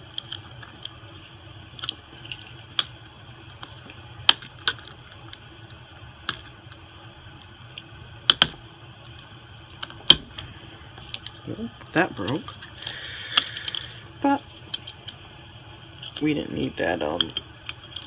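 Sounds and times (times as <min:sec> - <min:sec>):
tools clicking on phone internals: 0:00.0 - 0:01.0, 0:06.2 - 0:06.8, 0:08.3 - 0:08.6, 0:09.7 - 0:14.0, 0:14.6 - 0:15.2
steady low hum: 0:00.0 - 0:18.0.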